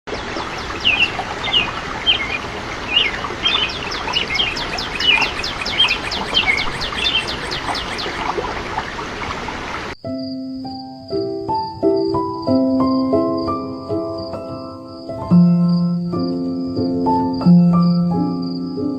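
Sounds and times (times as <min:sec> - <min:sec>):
birds chirping and singing: 0:00.2 - 0:09.8
steady background hiss: 0:00.5 - 0:14.1.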